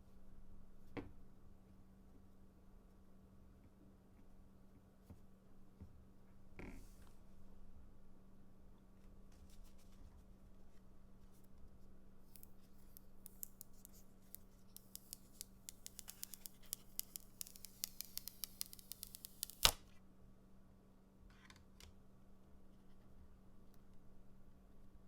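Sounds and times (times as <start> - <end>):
small plastic clicks: 12.3 - 19.8.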